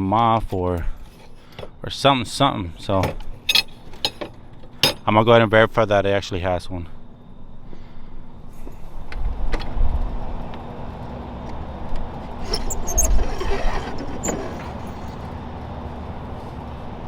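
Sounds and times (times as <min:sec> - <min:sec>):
wind rumble on microphone: 0:09.1 - 0:10.6.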